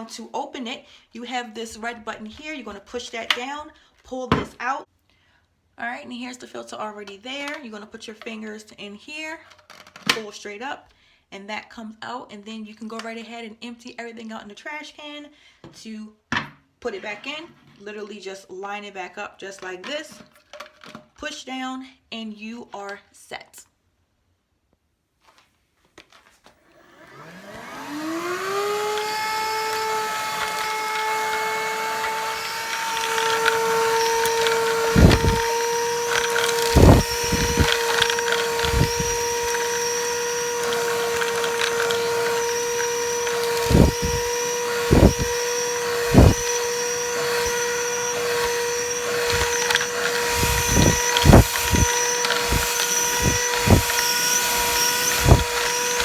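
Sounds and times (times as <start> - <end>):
handheld vacuum motor whining: 26.6 - 56.0.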